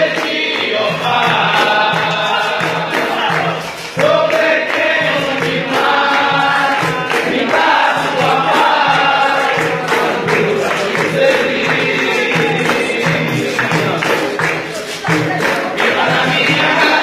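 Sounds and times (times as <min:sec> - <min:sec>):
group singing: 0:00.0 - 0:17.0.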